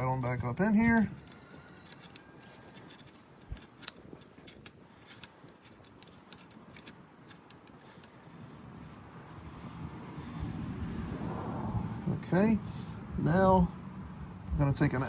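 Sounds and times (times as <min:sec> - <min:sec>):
small metal parts clicking: 0:00.0 - 0:08.2.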